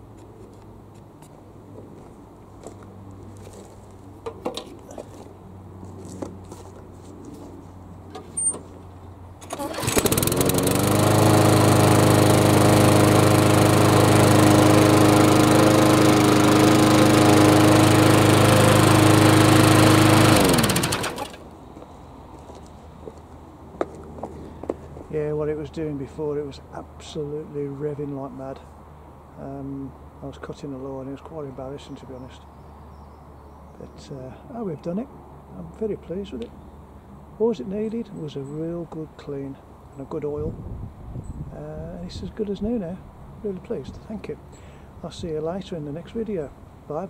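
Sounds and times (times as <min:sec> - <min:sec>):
handling knocks and clicks: 0:04.2 - 0:05.3
lawn mower engine running: 0:08.1 - 0:21.5.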